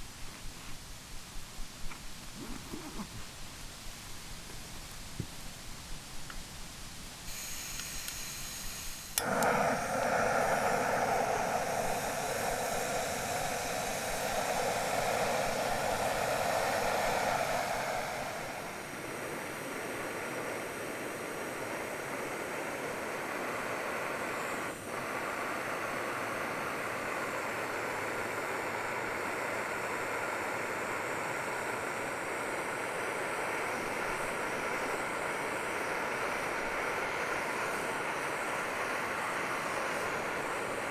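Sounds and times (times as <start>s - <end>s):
gas burner hissing: 0.0s - 40.9s
gas stove ignition click: 7.6s - 12.0s.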